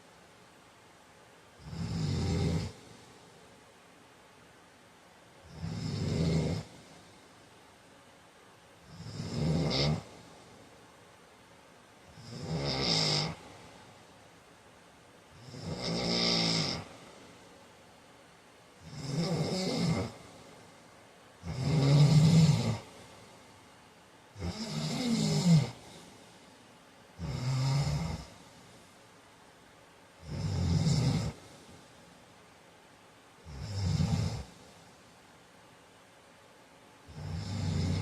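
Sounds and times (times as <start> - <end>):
man snoring: 1.6 - 3.0, 5.4 - 7.1, 8.9 - 10.4, 12.1 - 13.9, 15.3 - 17.3, 18.8 - 20.7, 21.4 - 23.2, 24.4 - 26.3, 27.2 - 28.6, 30.2 - 31.8, 33.4 - 34.8, 37.1 - 38.0.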